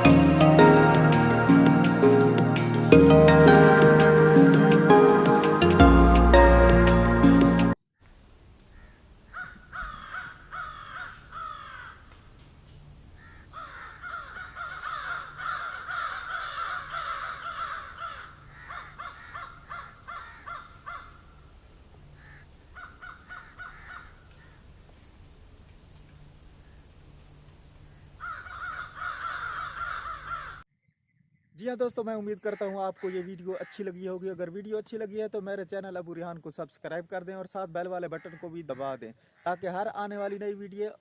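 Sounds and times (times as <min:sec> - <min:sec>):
crows cawing: 0:08.7 - 0:12.0, 0:13.2 - 0:21.2, 0:22.2 - 0:24.6, 0:28.2 - 0:30.6, 0:32.5 - 0:33.9, 0:38.1 - 0:39.8.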